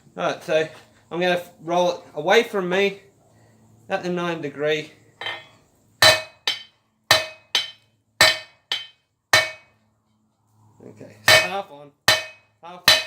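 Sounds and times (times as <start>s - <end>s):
hammer ringing on hot steel: 5.2s - 9.7s, 11.3s - 13.0s.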